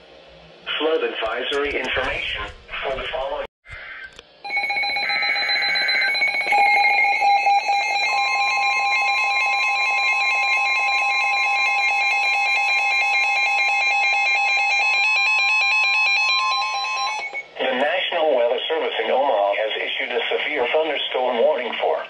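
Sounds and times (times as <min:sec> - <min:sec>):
two-tone alarm: 0:04.4 - 0:17.5.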